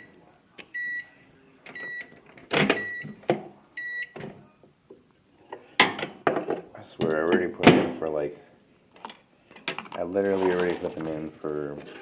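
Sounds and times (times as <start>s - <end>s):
microwave keypad beeping: 1.7s - 2.1s, 2.7s - 3.2s, 3.8s - 4.2s.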